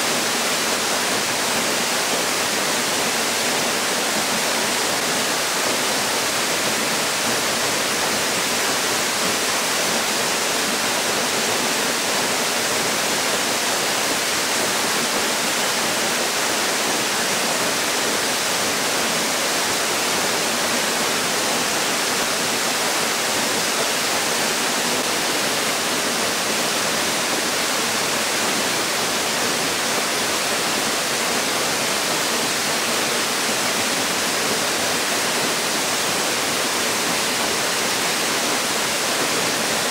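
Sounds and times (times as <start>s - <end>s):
waterfall pouring: 0.0s - 39.9s.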